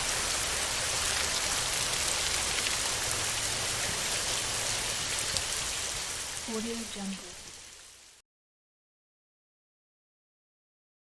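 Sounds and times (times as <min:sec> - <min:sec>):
heavy rain on a tin roof: 0:00.0 - 0:08.2.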